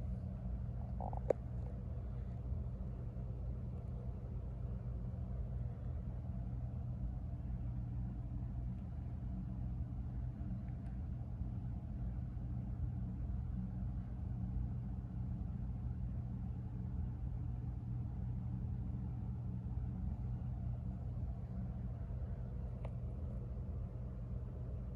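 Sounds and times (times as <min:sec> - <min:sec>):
low rumble: 0:00.0 - 0:06.5
droning hum: 0:00.0 - 0:24.9.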